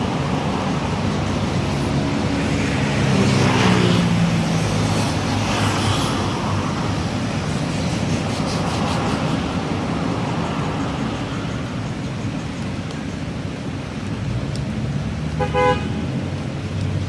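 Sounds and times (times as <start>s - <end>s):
road noise: 0.0s - 17.0s.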